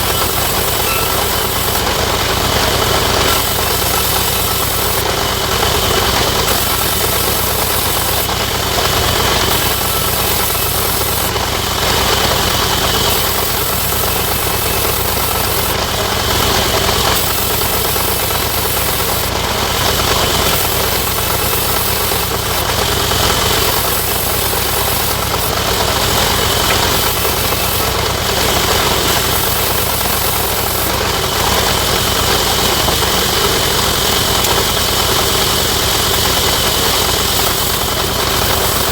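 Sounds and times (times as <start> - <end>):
sawmill machinery drone: 0.0 - 38.9.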